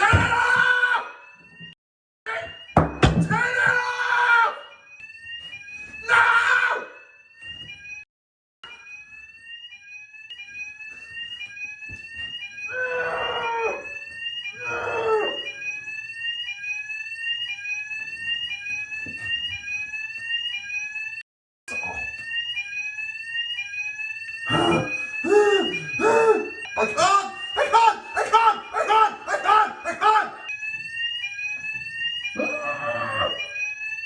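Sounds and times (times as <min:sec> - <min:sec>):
fire alarm rising tones: 0:00.0 - 0:34.0
man crying out: 0:24.5 - 0:30.5.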